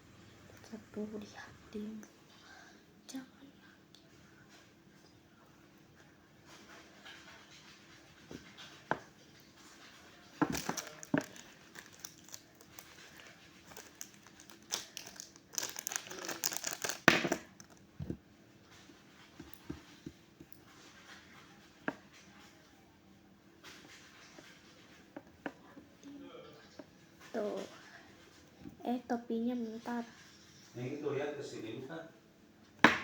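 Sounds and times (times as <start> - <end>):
packaging rustling and crinkling: 10.4 - 18.2.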